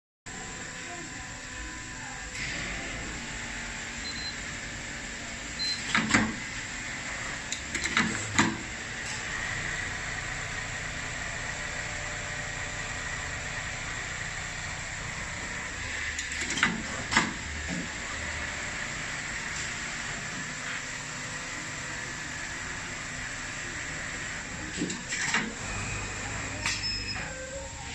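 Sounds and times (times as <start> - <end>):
sewing machine humming: 2.4 - 20.4, 21.1 - 26.6.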